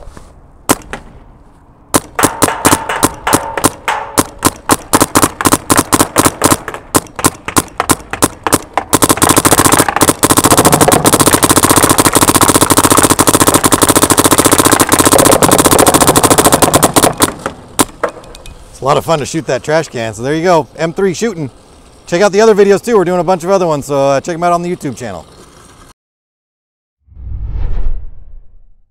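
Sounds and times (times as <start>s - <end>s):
paintball marker firing: 0.7s - 1.1s, 1.9s - 18.4s.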